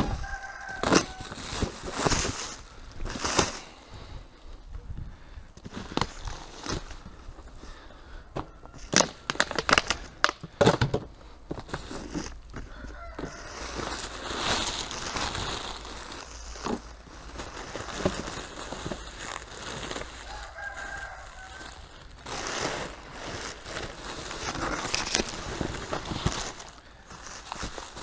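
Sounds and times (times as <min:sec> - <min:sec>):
rooster crowing: 0:00.0 - 0:01.5, 0:08.2 - 0:09.4, 0:12.7 - 0:14.2, 0:20.1 - 0:22.1
packaging rustling and crinkling: 0:00.0 - 0:03.8, 0:05.6 - 0:07.5, 0:08.7 - 0:28.0.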